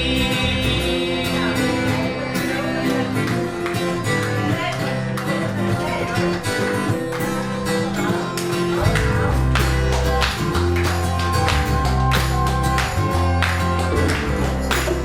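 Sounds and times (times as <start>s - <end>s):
heavy bass line: 0.0s - 3.6s, 6.7s - 15.0s
guitar: 0.0s - 15.0s.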